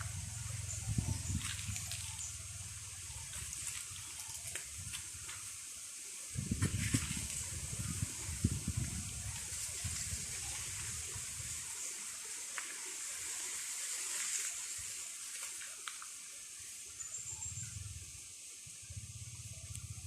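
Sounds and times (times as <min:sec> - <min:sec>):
wind rumbling on microphone: 0:00.0 - 0:05.5, 0:06.3 - 0:11.8
wind rushing through foliage: 0:00.0 - 0:20.0
faint ticks: 0:19.5 - 0:20.0.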